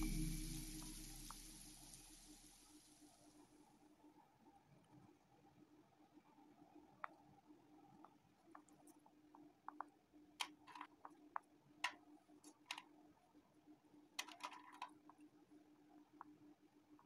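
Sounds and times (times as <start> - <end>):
low steady hum: 0.0 - 10.1.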